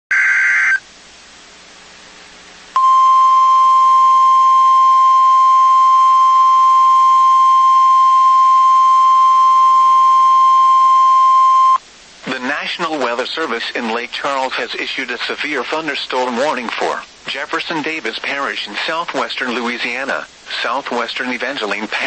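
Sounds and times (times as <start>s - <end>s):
faint radio hiss: 0.2s - 4.3s, 11.6s - 22.0s
steady loud alarm beep: 2.8s - 11.8s.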